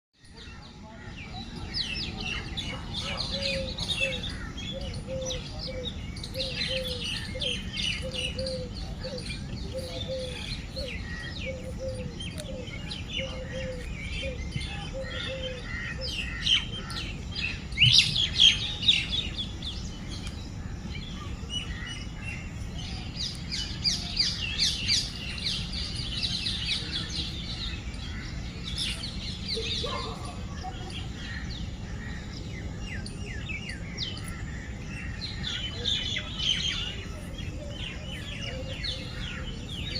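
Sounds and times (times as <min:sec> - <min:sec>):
birds chirping in chorus: 0:00.2 - 0:39.9
lower repeated bird call: 0:00.3 - 0:20.4.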